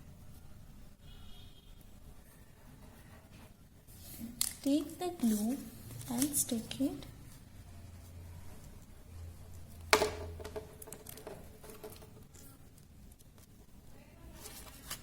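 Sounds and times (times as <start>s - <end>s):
paper handling noises: 3.3s - 7.5s, 11.6s - 15.0s.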